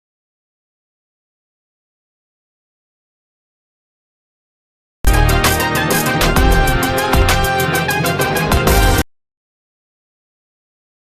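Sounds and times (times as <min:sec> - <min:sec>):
intro music with steady beat: 0:05.1 - 0:09.0.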